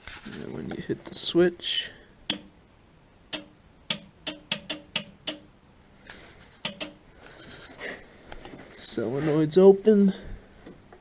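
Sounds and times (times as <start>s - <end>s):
solenoids clicking with buzz: 2.2s - 2.6s, 3.3s - 5.6s, 6.6s - 7.0s.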